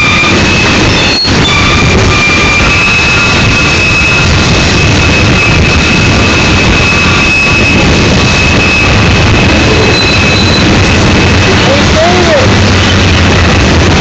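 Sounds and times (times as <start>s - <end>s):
freight train rumbling past: 0.0s - 14.0s
high-pitched whine: 0.0s - 14.0s.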